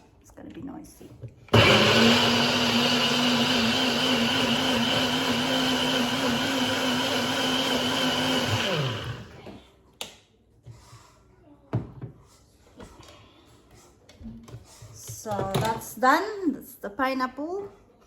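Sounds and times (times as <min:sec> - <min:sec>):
blender running: 0:01.5 - 0:09.6.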